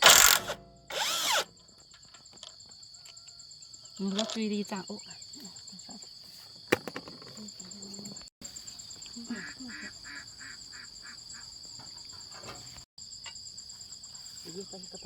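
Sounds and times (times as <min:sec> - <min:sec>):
insects droning: 0:00.0 - 0:15.0
waterfowl honking: 0:09.3 - 0:11.5.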